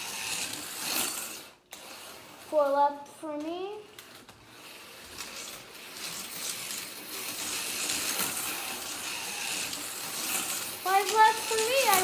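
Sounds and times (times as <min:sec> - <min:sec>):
small electric motors whirring: 0:00.0 - 0:02.8, 0:03.8 - 0:12.0
wheels rattling along rails: 0:07.4 - 0:12.0.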